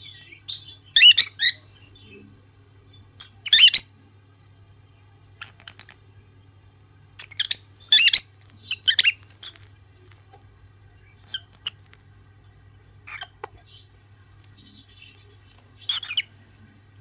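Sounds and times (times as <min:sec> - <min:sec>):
lovebirds chirping and squawking: 0:00.0 - 0:02.2, 0:02.9 - 0:03.9, 0:05.4 - 0:06.0, 0:07.2 - 0:09.7, 0:11.0 - 0:12.0, 0:13.0 - 0:16.5.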